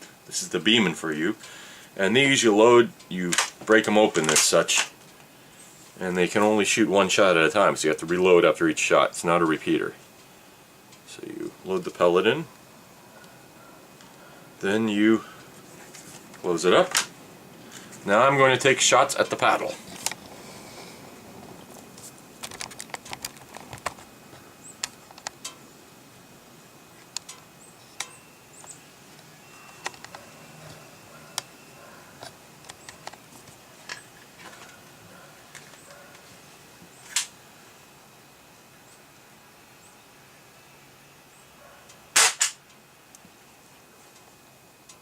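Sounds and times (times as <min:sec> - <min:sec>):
small clicks and light knocks: 0:21.7 - 0:25.6, 0:27.0 - 0:30.2.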